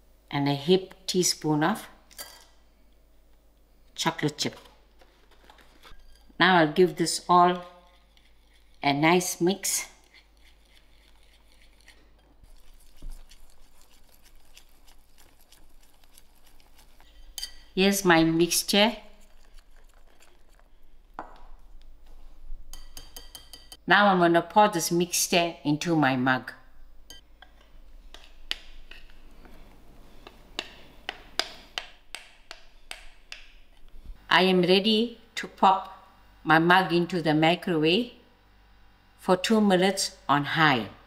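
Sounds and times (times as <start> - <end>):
utensil stirring batter in bowl: 5.4 - 21.2, 22.7 - 23.8
spoon tapping against dishes: 22.7 - 23.8.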